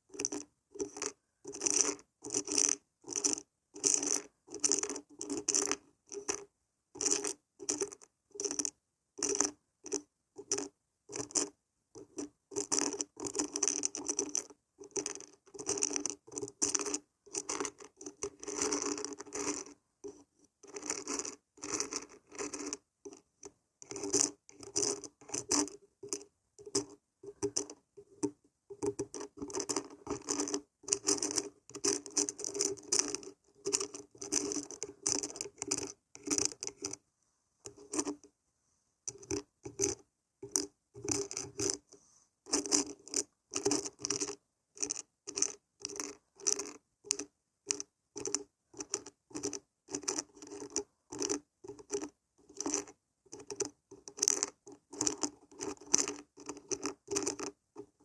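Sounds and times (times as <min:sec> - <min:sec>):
beans rattling when shaken: 0:28.8 - 0:37.0, 0:42.5 - 0:57.5.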